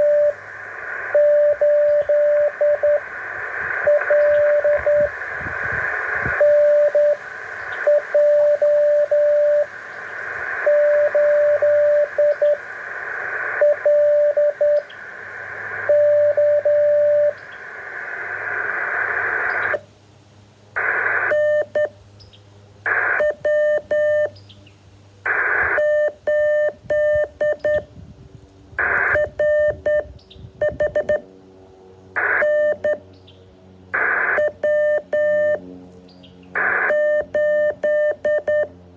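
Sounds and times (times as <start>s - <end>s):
morse code beeping tone: 0.0s - 0.4s, 1.1s - 3.0s, 3.8s - 5.1s, 6.3s - 7.2s, 7.8s - 9.7s, 10.6s - 12.6s, 13.6s - 14.8s, 15.9s - 17.4s, 21.3s - 21.9s, 23.2s - 24.3s, 25.8s - 27.8s, 28.8s - 31.2s, 32.4s - 33.0s, 34.4s - 35.6s, 36.6s - 38.7s
bursts of static: 0.0s - 20.0s, 20.6s - 22.0s, 22.8s - 24.3s, 25.2s - 28.0s, 28.7s - 31.4s, 32.1s - 33.1s, 33.8s - 35.8s, 36.5s - 38.9s
radio band hiss: 0.0s - 28.0s, 28.7s - 31.4s, 32.0s - 38.9s.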